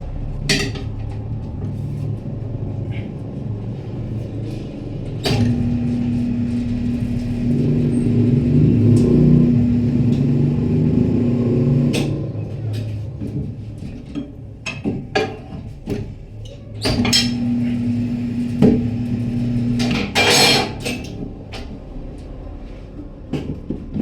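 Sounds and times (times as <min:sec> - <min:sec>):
low mechanical rumble: 0:00.0 - 0:20.2
motor humming: 0:05.3 - 0:12.3, 0:16.9 - 0:20.2.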